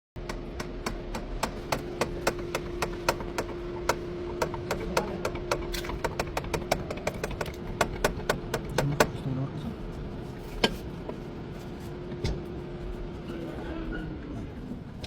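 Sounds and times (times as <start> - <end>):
steady hum: 0.2 - 15.0.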